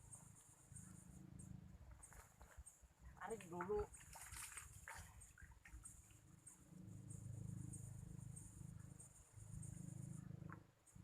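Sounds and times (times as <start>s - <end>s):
high insect chirp: 0.0s - 11.0s.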